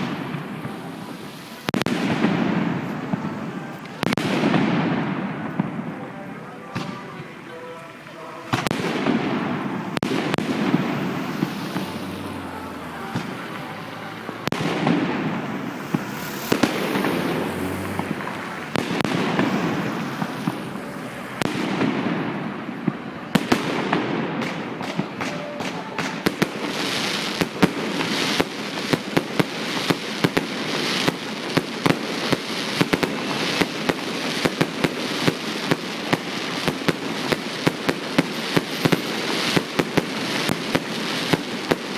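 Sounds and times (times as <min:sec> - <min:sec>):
rapid firework cracks: 0:00.0 - 0:06.1, 0:08.5 - 0:41.9
firework shell bursts with crackle: 0:08.5 - 0:20.8, 0:23.4 - 0:41.9.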